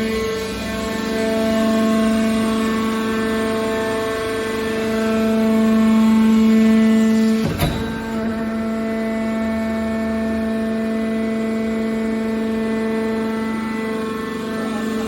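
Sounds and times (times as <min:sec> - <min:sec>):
hydraulic press motor humming: 0:04.7 - 0:14.1.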